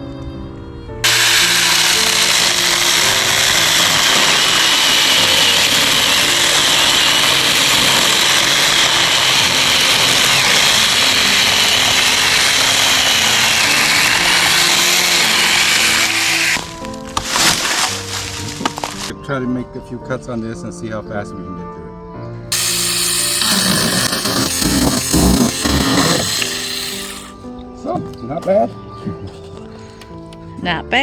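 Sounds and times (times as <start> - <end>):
electric chainsaw cutting wood: 1.0 - 19.1, 22.5 - 27.4.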